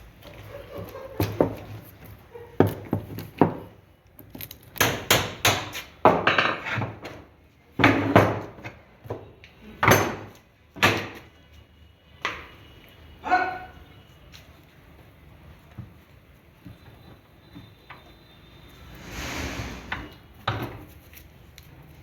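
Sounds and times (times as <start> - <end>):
rattling or scraping: 18.8 - 20.2.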